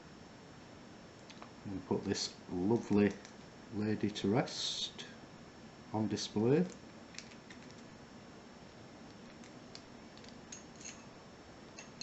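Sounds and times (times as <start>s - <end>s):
small high-pitched clinks: 10.5s - 11.1s.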